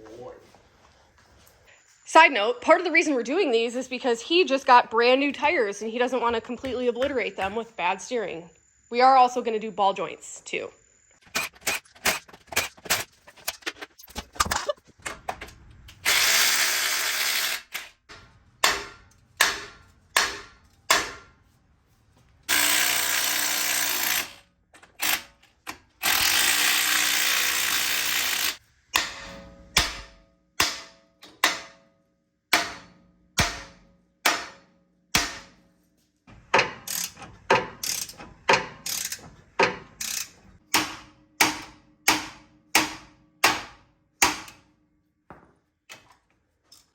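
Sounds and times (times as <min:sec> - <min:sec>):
power tool running: 0:15.9 - 0:18.0, 0:22.5 - 0:24.4, 0:26.0 - 0:28.6
ratchet clicks and metal knocks: 0:22.5 - 0:31.8, 0:36.4 - 0:43.8.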